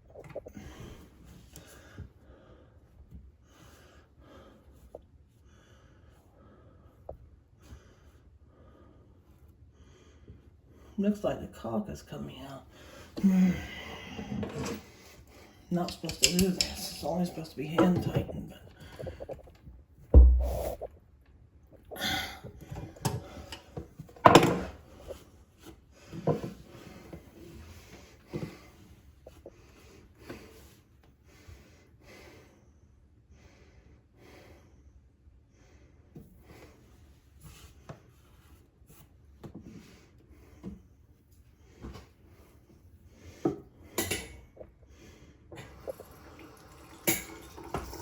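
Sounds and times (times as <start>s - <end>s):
faint breathing: 12.7s - 15.7s
heavy thump: 20.2s - 20.8s.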